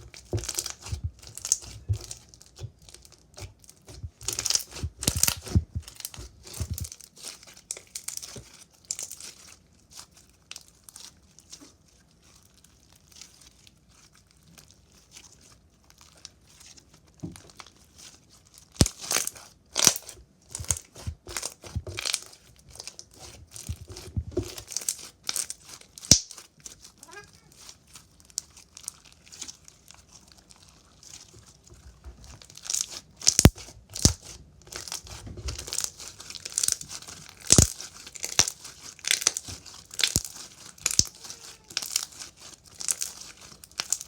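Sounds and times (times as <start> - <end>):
slime squishing crackles: 0.0 - 44.0
slime snapping: 26.0 - 26.4, 32.6 - 35.0, 35.6 - 41.1.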